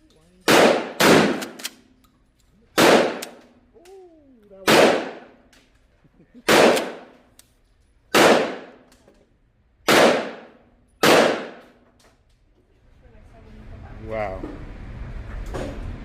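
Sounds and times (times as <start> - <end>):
shotgun shots: 0.5 - 1.7, 2.8 - 3.4, 4.7 - 5.4, 6.5 - 7.1, 8.1 - 8.8, 9.9 - 11.7.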